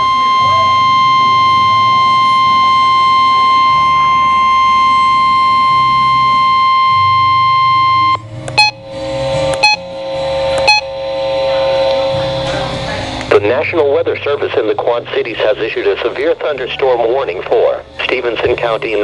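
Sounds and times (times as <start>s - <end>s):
steady warning alert tone: 0.0s - 12.2s
low hum: 0.0s - 13.4s.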